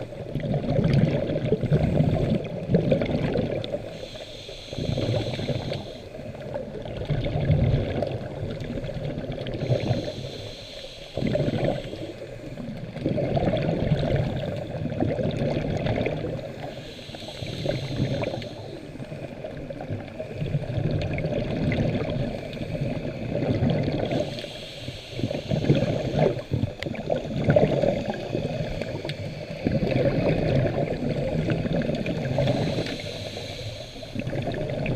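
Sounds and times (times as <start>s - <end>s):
underwater bubbling and gurgling: 0.0s - 34.9s
diver breathing through regulator: 3.8s - 6.6s, 9.5s - 13.0s, 16.4s - 20.7s, 22.1s - 31.0s, 31.6s - 34.6s.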